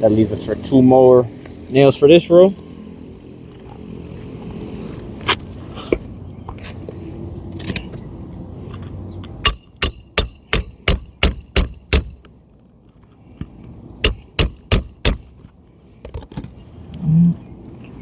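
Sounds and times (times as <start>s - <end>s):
hammer striking metal tool: 9.4s - 12.2s, 14.0s - 15.3s.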